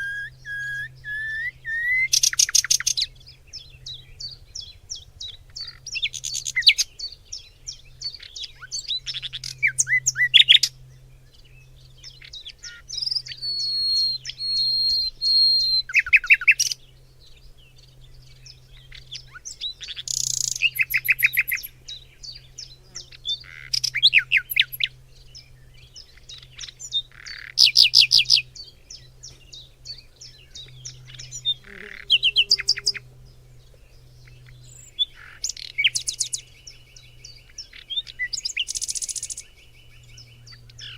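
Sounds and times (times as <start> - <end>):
songbirds singing: 0.0 - 40.9.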